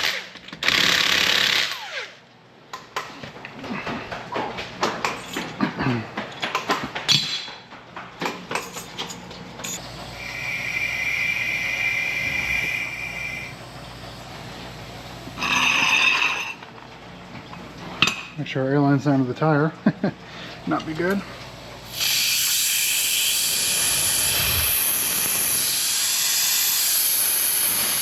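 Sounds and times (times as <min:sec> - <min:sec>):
compressed air hissing: 0:09.8 - 0:15.9, 0:21.8 - 0:28.0
short blast of air: 0:10.2 - 0:13.6, 0:21.9 - 0:28.0.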